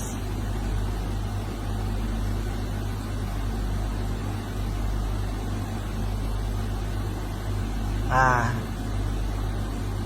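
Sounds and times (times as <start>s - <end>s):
low mechanical hum: 0.0s - 10.0s
noisy background: 0.0s - 10.0s.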